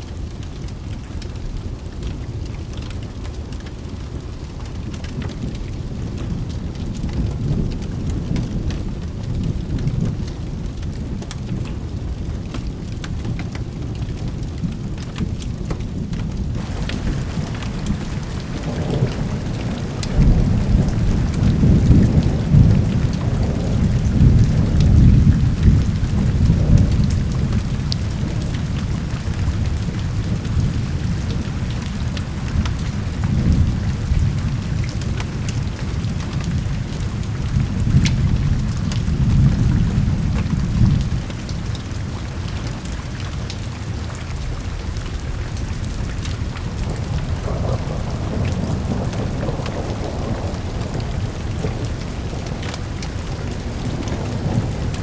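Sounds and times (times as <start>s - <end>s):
steady rain: 0.0s - 55.0s
thunder rumbling: 16.6s - 41.8s, 45.2s - 55.0s.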